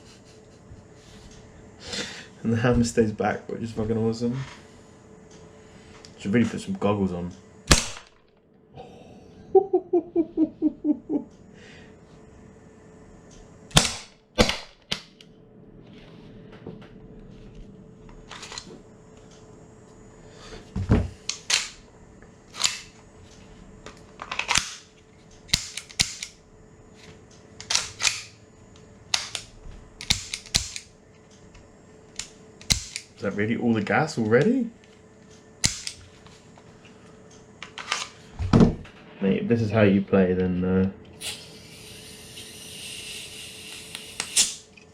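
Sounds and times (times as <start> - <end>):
airsoft pistol shots: 7.7 - 8.2, 13.7 - 14.8.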